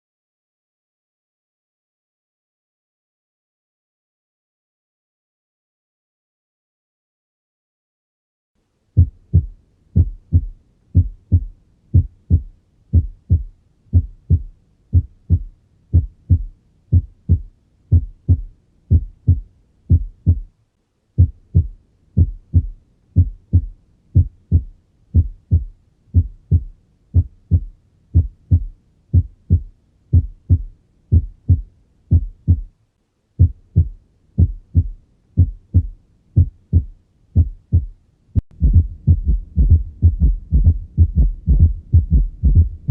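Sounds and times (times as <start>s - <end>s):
heartbeat lub-dub: 9.0s - 20.6s, 21.2s - 32.8s, 33.4s - 42.9s.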